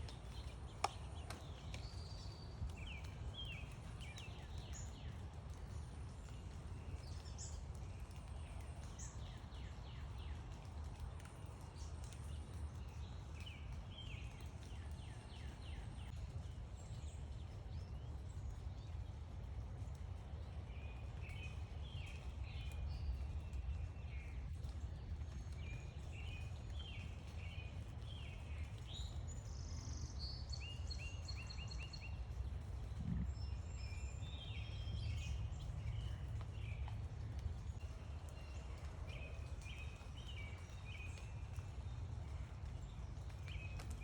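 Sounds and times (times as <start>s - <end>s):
small birds chirping: 0.0s - 44.0s
steady low rumble: 32.0s - 38.0s.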